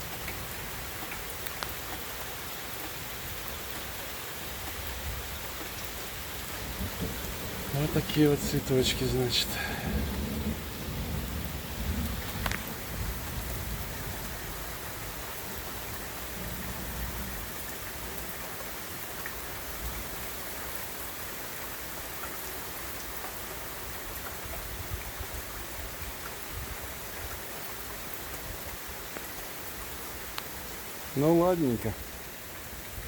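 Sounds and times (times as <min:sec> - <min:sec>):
rain drop ticks: 0:00.0 - 0:03.9, 0:06.5 - 0:14.4, 0:19.0 - 0:20.8, 0:25.8 - 0:26.5, 0:27.2 - 0:30.8
heavy rain pouring: 0:00.0 - 0:33.0.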